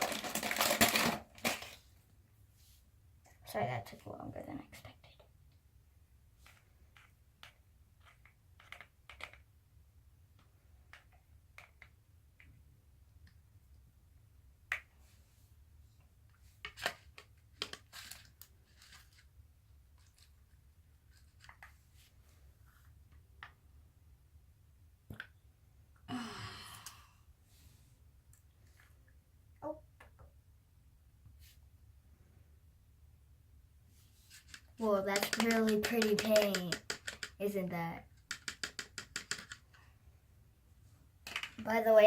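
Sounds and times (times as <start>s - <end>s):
hands clicking and tapping supplies: 0.0s - 1.8s, 6.4s - 9.5s, 10.3s - 13.4s, 16.3s - 19.2s, 34.3s - 39.8s, 41.2s - 41.7s.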